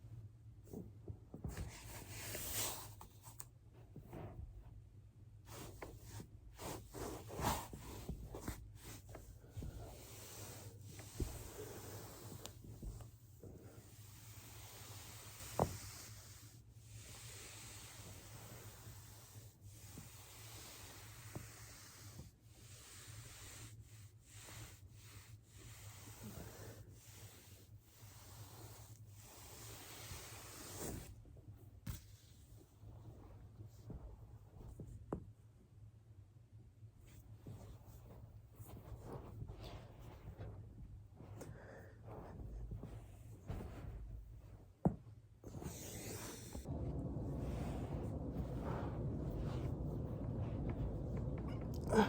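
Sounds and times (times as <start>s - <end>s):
body rubbing on foam roller: 5.5s - 35.4s, 37.0s - 52.0s
steady low hum: 36.7s - 52.0s.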